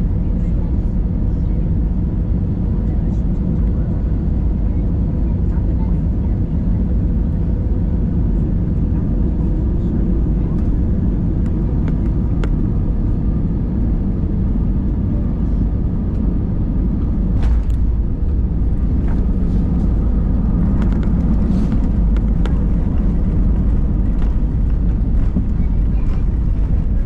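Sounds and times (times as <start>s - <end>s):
airliner cabin rumble: 0.0s - 27.0s
light clicks and rattles: 19.0s - 26.8s.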